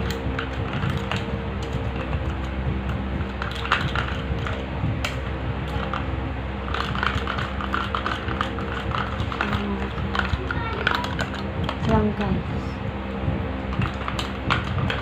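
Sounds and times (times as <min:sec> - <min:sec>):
small clicks and scrapes: 0:00.0 - 0:06.1, 0:06.7 - 0:11.9
spoon stirring slime: 0:03.3 - 0:11.9.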